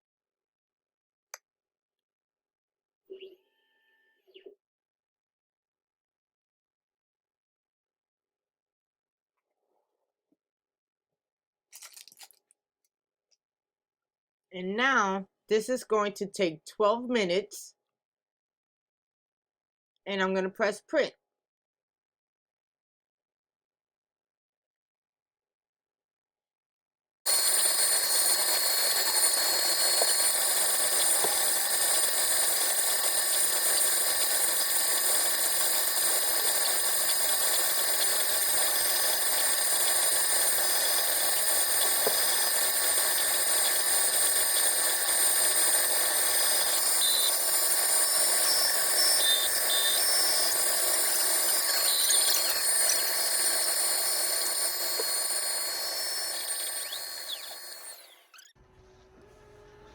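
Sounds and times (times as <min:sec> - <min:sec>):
laser cutter whirring: 0:27.3 - 0:58.5
short high-pitched tones: 0:27.3 - 0:58.6.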